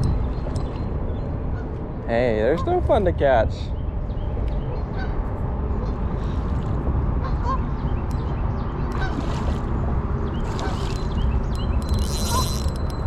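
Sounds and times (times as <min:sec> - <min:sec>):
shallow river water rushing: 0:08.9 - 0:12.9
water splashes: 0:09.0 - 0:11.1.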